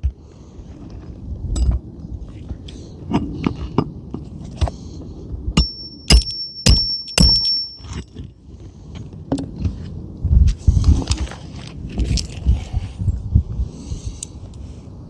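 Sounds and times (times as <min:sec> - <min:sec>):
hammer striking metal tool: 0:01.6 - 0:01.8, 0:05.6 - 0:08.1.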